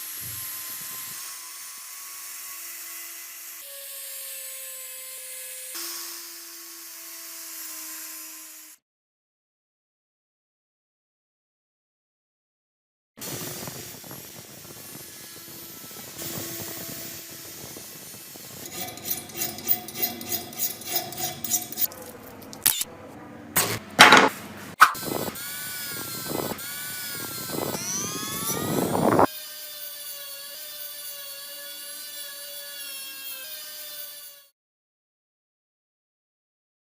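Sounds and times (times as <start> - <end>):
power tool whining: 0.0 - 3.8, 13.2 - 21.9, 25.0 - 32.5
scraping on metal blade: 18.4 - 22.9.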